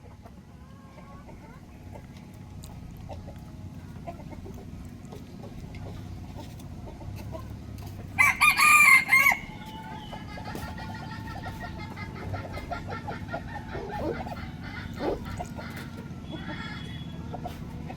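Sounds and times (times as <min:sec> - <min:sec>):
faint chicken clucking: 0:00.0 - 0:17.9
rooster crowing: 0:08.2 - 0:09.9.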